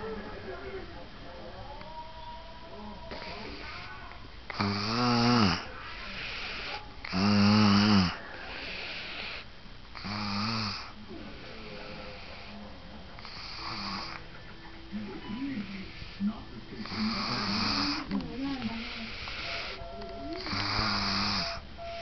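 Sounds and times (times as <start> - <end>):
breathy hissing: 3.1 - 14.4, 15.5 - 22.0
person snoring: 4.5 - 9.4, 10.0 - 12.6, 16.8 - 18.1, 20.4 - 22.0.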